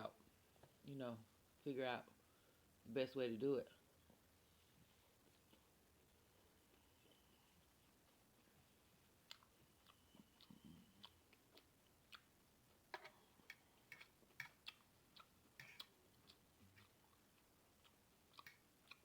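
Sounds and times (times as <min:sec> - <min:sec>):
mouth clicks and smacks chewing: 0:07.6 - 0:19.0.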